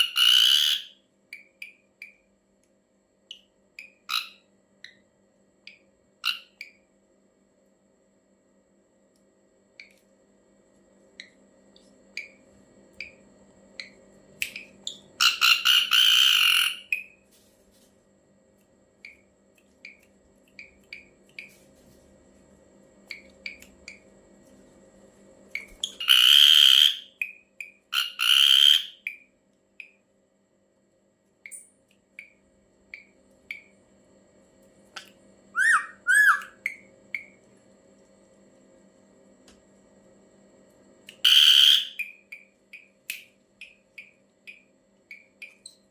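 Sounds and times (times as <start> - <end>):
faint steady hum: 0.0 - 45.9
rising whistled bird notes: 35.6 - 36.6
harsh rasping bird calls: 35.6 - 36.7.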